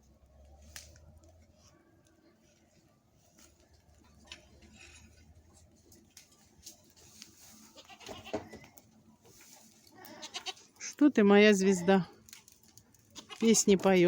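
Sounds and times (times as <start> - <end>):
faint goat bleat: 9.9 - 10.7.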